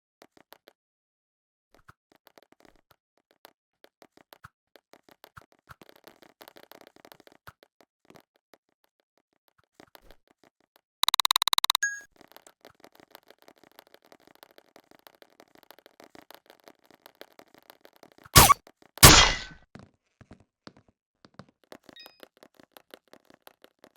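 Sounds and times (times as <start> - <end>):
crackling clicks: 11.0 - 11.8.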